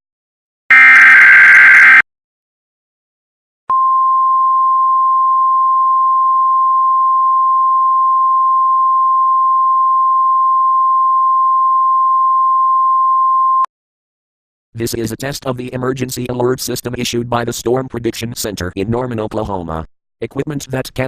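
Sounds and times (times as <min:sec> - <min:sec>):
steady high-pitched alert tone: 0:00.7 - 0:02.0.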